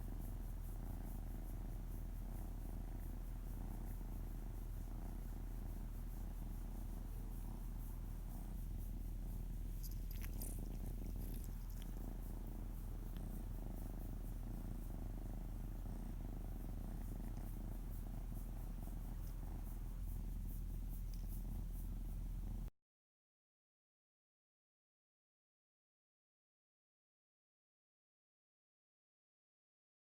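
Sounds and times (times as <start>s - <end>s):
cat purring: 0.0s - 22.7s.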